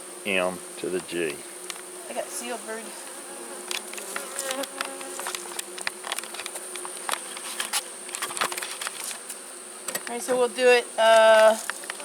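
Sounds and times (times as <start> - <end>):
bees buzzing: 0.0 - 12.0.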